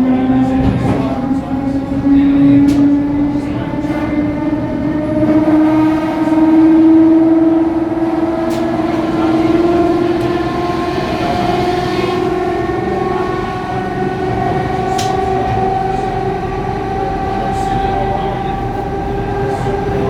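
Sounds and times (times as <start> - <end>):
train traction motor growl: 0.0 - 20.0.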